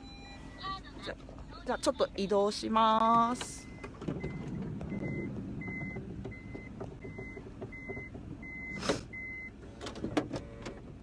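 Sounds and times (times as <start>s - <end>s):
vehicle warning beeps: 0.0s - 0.9s, 3.4s - 9.6s
engine low rumble: 0.0s - 11.0s.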